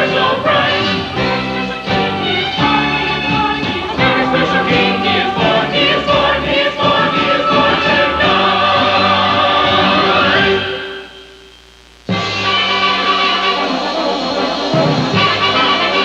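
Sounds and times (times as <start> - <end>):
choir singing: 0.0 - 11.3
musical accompaniment: 0.0 - 16.0.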